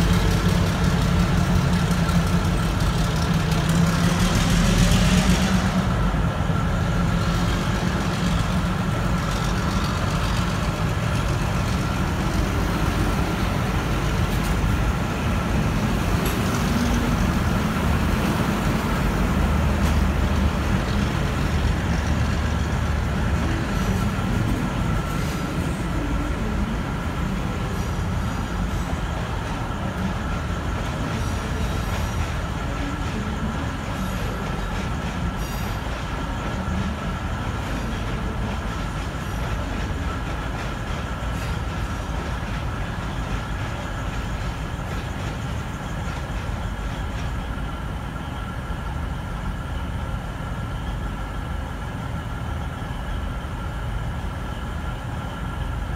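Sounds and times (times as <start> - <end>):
locomotive low rumble: 0.0 - 55.9.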